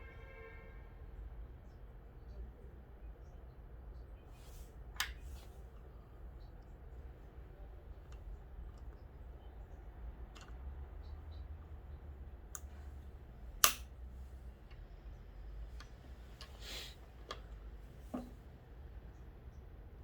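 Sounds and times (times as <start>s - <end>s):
sharp loud click: 13.6s - 13.9s
small parts clicking and tapping: 13.6s - 13.9s.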